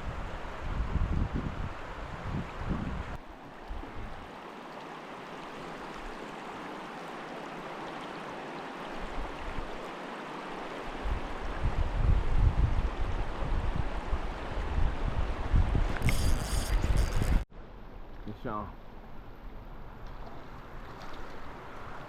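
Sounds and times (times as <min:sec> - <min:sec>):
wind buffeting microphone: 0:00.0 - 0:04.2, 0:11.0 - 0:17.5
river water rushing: 0:03.2 - 0:11.6.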